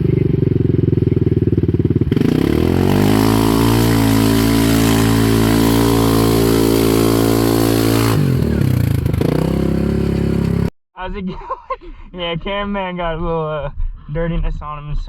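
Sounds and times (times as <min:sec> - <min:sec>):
atv engine revving: 0:00.0 - 0:10.7.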